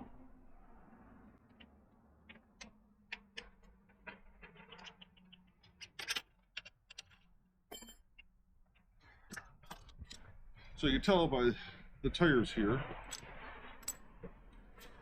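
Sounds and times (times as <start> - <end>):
bike parts and tools clicking: 1.4 - 10.4.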